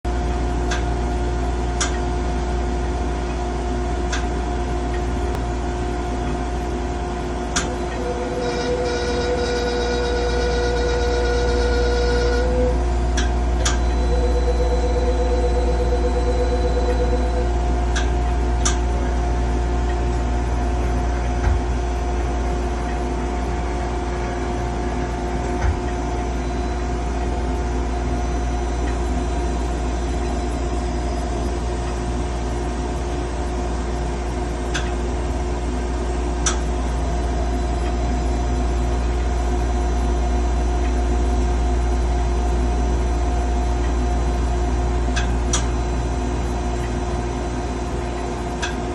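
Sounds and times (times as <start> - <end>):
machine deep hum: 0.1 - 48.9
machine whining tones: 7.6 - 32.9
pulsing tone: 13.7 - 17.6.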